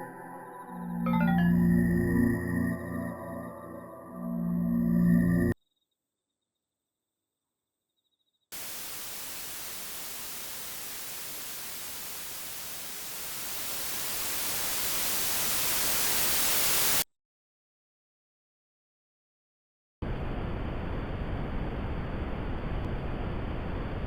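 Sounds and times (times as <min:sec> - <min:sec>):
static hiss: 0:08.6 - 0:17.0.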